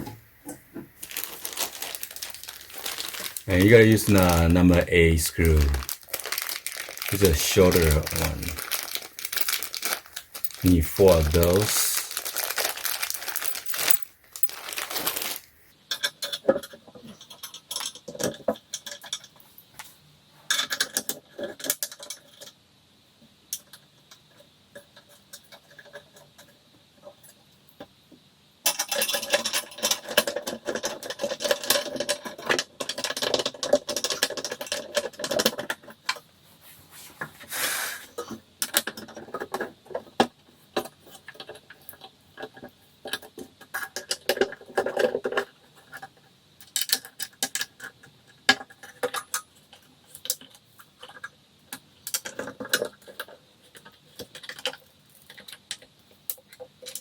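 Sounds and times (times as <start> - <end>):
metal screws clinking and rattling: 12.3 - 15.4.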